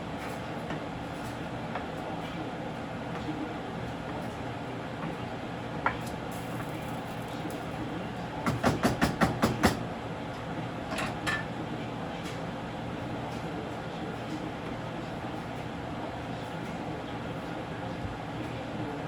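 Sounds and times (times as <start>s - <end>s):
utensils knocking on cookware: 8.5s - 9.8s.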